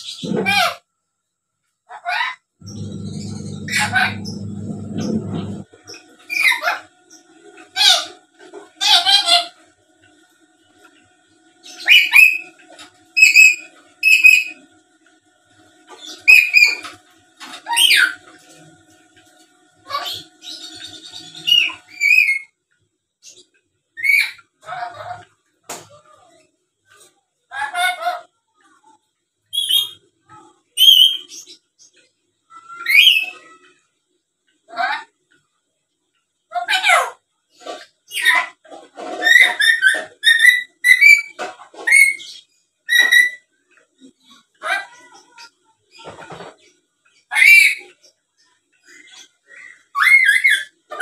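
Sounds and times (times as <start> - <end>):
parrot shrill calls: 11.8 - 12.5, 49.9 - 51.0
parrot whistled calls: 11.8 - 12.5.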